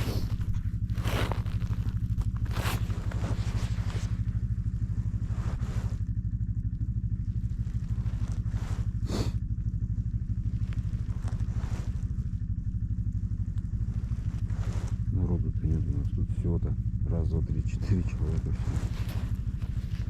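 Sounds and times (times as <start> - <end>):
scrapes and rustles: 0.0 - 6.0, 7.3 - 9.3, 10.4 - 12.4, 13.5 - 15.2, 18.2 - 20.0
snowmobile engine idling: 0.0 - 20.0.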